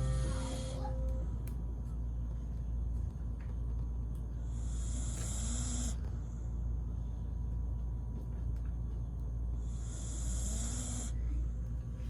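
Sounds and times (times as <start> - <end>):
steady low hum: 0.0 - 12.0
hissing snore: 4.6 - 6.0, 9.7 - 11.2.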